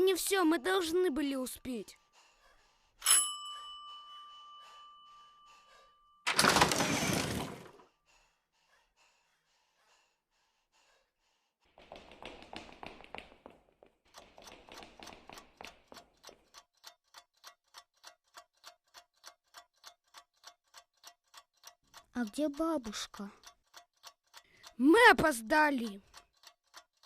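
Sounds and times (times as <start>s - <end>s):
clock ticking: 0.0s - 2.8s, 14.1s - 27.0s
faint clicks: 25.7s - 27.0s.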